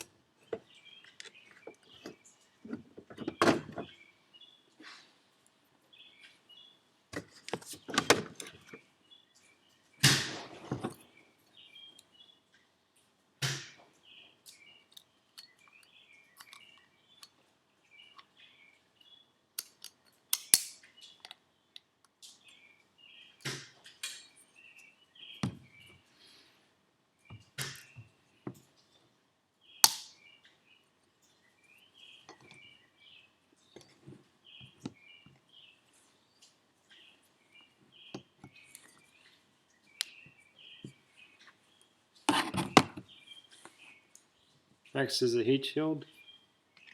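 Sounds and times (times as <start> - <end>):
birds chirping: 0.0 - 46.9
metallic clicks of tools and parts: 14.4 - 17.4, 19.6 - 21.9.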